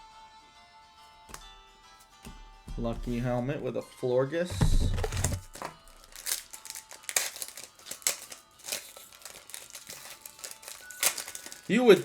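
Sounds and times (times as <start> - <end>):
cards sliding: 4.5 - 6.4
packaging crinkling: 4.5 - 12.0.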